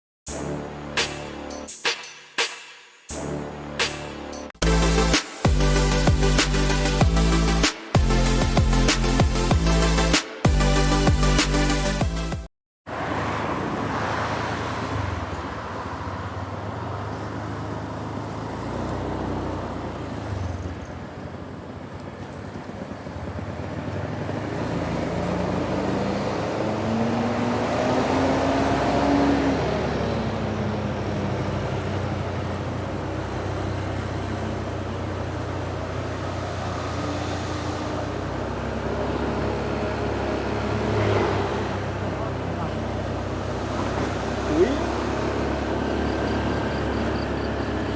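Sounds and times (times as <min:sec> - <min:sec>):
roadside traffic: 0:03.1 - 0:47.9
heavy vehicle engine running: 0:12.9 - 0:47.9
vehicle passing by: 0:12.9 - 0:47.9.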